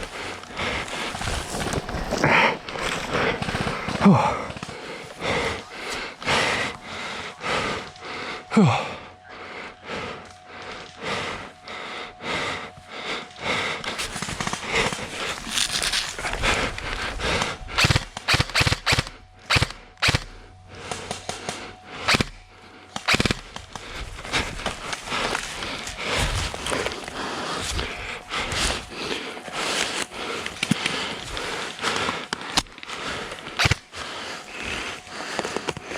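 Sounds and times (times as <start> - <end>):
airsoft guns firing: 17.8 - 23.9, 33.6 - 34.0.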